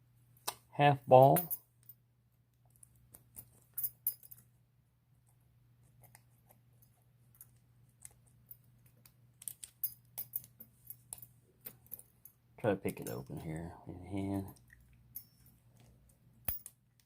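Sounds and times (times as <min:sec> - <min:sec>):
padlock and picks clicking: 0:07.4 - 0:12.1, 0:15.2 - 0:17.0.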